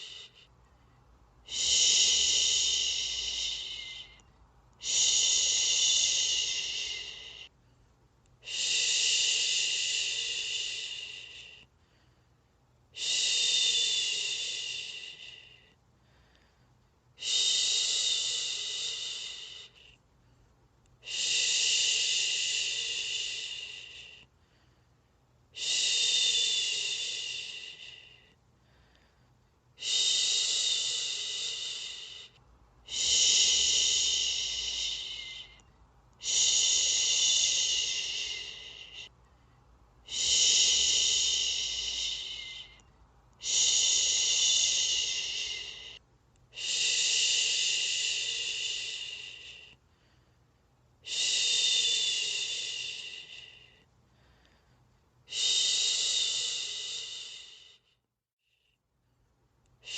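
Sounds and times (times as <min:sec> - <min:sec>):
person shushing: 0:00.0 - 0:00.5, 0:01.5 - 0:04.2, 0:04.8 - 0:07.5, 0:32.9 - 0:35.6, 0:36.2 - 0:39.1, 0:40.1 - 0:42.8, 0:43.4 - 0:46.0.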